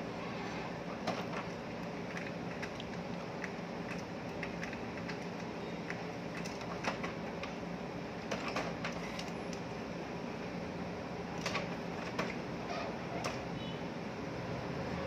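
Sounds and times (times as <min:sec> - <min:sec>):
inkjet printer clicking and humming: 0:00.2 - 0:09.7, 0:11.3 - 0:13.5.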